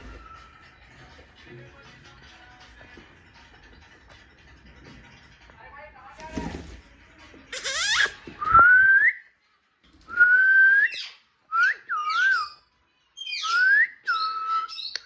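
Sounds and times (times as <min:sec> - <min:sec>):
harsh scratchy parrot calls: 0:07.5 - 0:08.2
parrot whistling: 0:07.5 - 0:09.2, 0:10.2 - 0:12.6.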